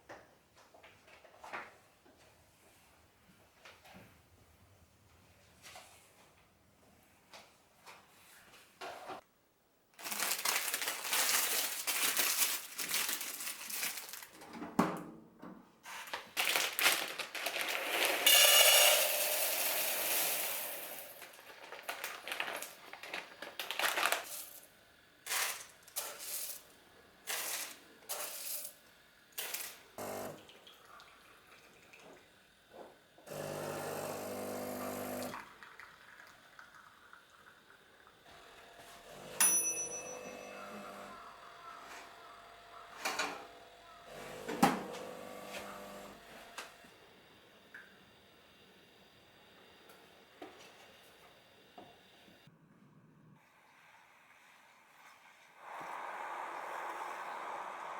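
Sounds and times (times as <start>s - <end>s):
rustling: 10.0s - 14.4s
small motor humming: 30.0s - 30.4s, 33.3s - 35.4s, 40.1s - 41.4s, 43.4s - 46.9s.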